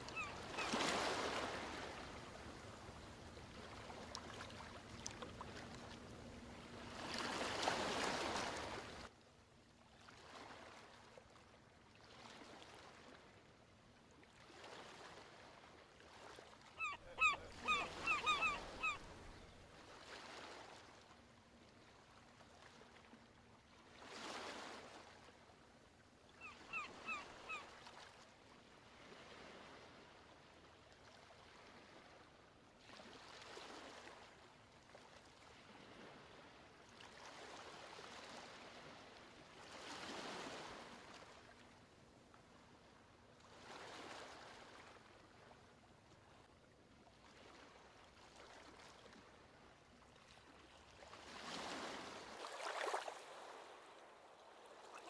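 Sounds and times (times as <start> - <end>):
ocean waves washing ashore: 0.0 - 9.1, 16.2 - 20.9
bird calling short clipped notes: 16.8 - 19.1.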